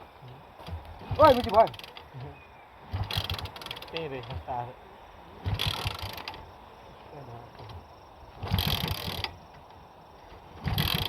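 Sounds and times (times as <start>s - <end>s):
motorcycle kick-starter ratcheting: 0.6s - 4.6s, 5.4s - 6.5s, 7.5s - 11.0s.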